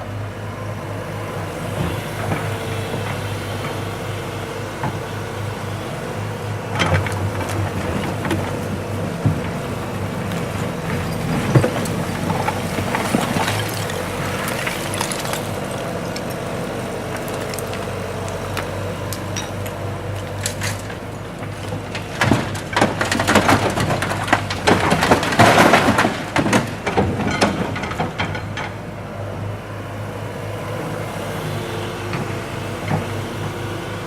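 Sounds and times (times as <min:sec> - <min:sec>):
diesel loader engine running: 0:00.0 - 0:34.0
bricks and rubble crashing: 0:10.3 - 0:16.4, 0:19.1 - 0:28.6.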